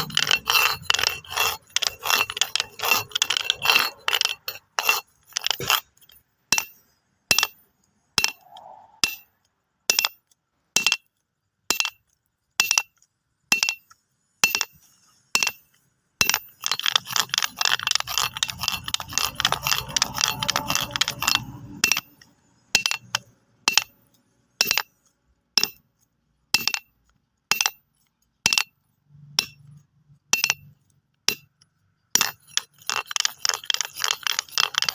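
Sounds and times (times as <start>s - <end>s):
stones clacking together: 0.0s - 7.6s, 9.9s - 25.0s, 26.6s - 29.8s, 30.4s - 34.9s
stones rattling and clicking: 0.0s - 7.6s, 9.9s - 34.9s.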